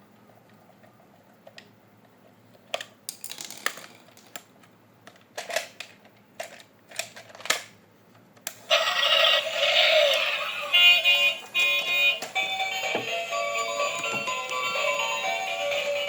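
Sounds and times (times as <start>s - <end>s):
plastic toy clicks and rattles: 2.7s - 4.5s, 5.1s - 7.7s
electronic toy music: 8.7s - 16.0s.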